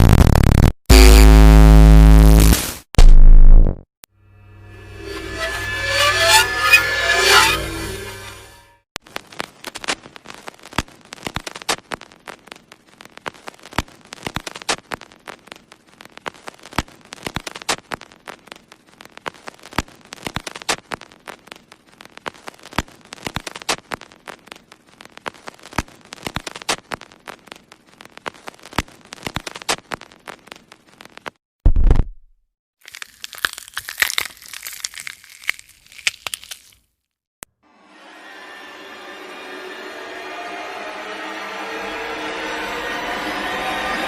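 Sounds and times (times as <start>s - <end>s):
crackling clicks and pops: 0.0s - 0.8s, 9.0s - 32.2s.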